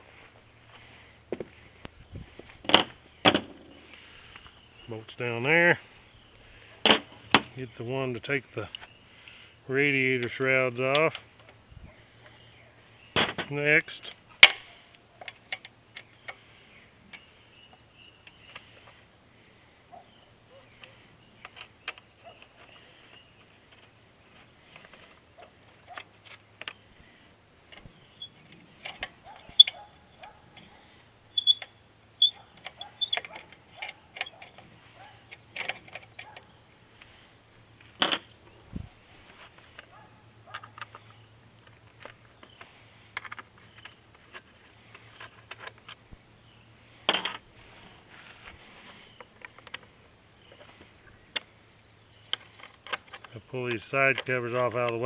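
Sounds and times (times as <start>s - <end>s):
tools and bolts clinking: 47.0s - 47.4s.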